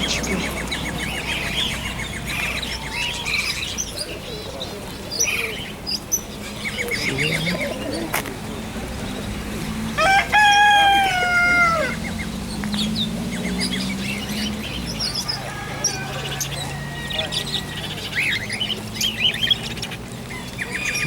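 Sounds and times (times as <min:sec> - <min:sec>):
rooster crowing: 0:00.0 - 0:03.8, 0:09.9 - 0:12.2, 0:14.9 - 0:18.6
caged birds chirping: 0:00.0 - 0:21.0.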